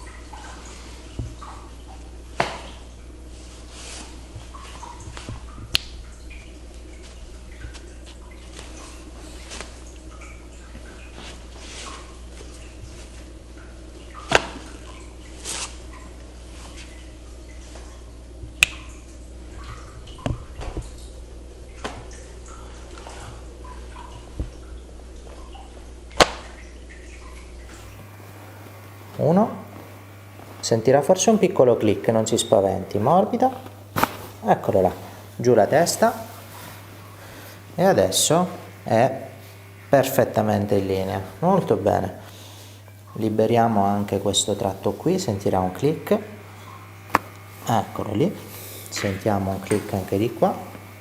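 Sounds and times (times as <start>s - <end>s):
steady low hum: 0.0s - 51.0s
soft rustling: 3.3s - 5.6s, 7.0s - 10.1s, 10.8s - 13.4s, 27.7s - 30.8s, 33.6s - 37.7s.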